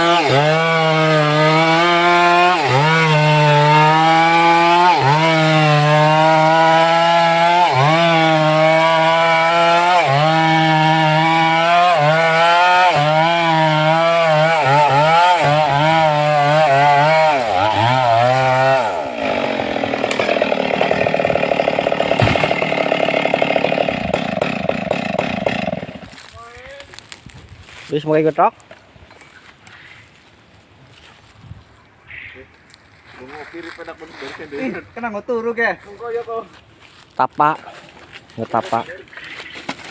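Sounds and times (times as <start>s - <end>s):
chainsaw cutting wood: 0.0s - 26.3s.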